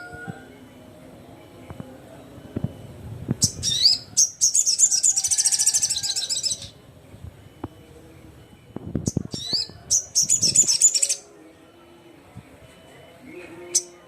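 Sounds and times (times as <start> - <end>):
high-pitched bird chirps: 3.4 - 6.8, 9.0 - 11.2
rapid high bird trill: 3.4 - 6.8.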